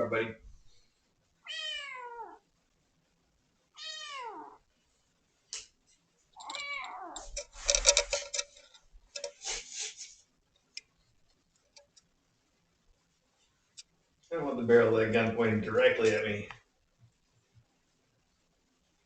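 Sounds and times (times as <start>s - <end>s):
kitten meowing: 1.5s - 2.4s, 3.8s - 4.6s, 6.4s - 7.2s
rustling with thumps: 5.8s - 9.7s.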